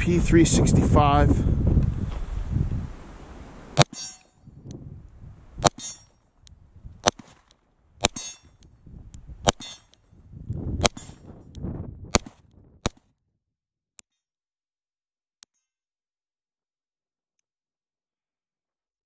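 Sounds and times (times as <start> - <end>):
low wind noise: 0.0 - 12.9
bullets clanging on steel plates: 3.8 - 4.4
gunshots: 5.6 - 6.0, 7.0 - 8.5, 9.4 - 9.9, 10.8 - 11.2, 12.1 - 13.0.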